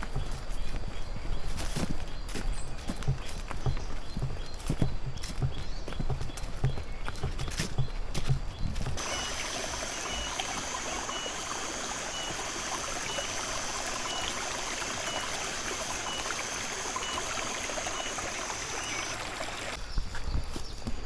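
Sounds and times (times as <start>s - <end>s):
stream trickling: 8.9s - 19.8s.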